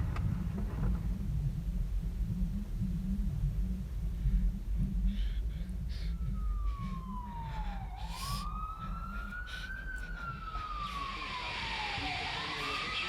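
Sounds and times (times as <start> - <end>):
low steady rumble: 0.0 - 12.6
emergency siren wailing: 5.5 - 13.0.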